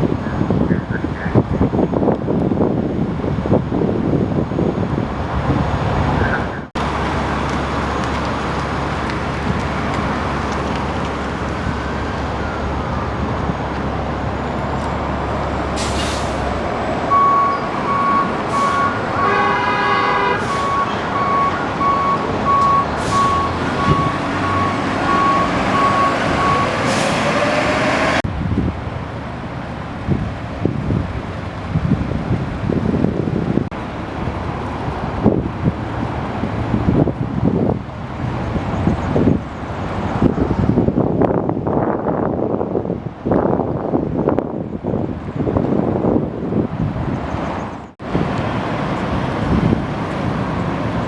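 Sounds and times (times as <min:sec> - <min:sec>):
diesel engine running: 0:04.4 - 0:28.2
horn toot: 0:15.4 - 0:21.6
air brake hisses: 0:15.6 - 0:16.6, 0:20.4 - 0:21.0, 0:22.9 - 0:23.6, 0:26.8 - 0:27.4.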